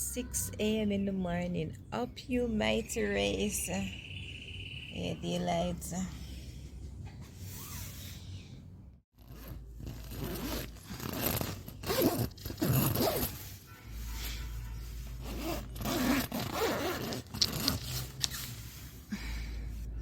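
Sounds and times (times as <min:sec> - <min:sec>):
tent zipper being pulled: 0:07.5 - 0:08.2, 0:09.2 - 0:13.6, 0:15.1 - 0:19.0.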